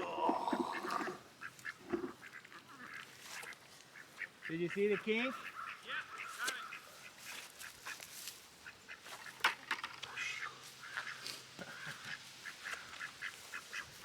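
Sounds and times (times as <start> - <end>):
waterfowl calling: 0.0 - 14.0.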